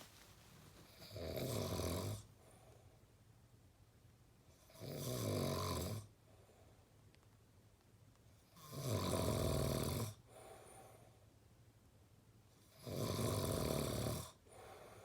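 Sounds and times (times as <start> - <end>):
soft breath: 10.2 - 11.3, 14.4 - 15.0.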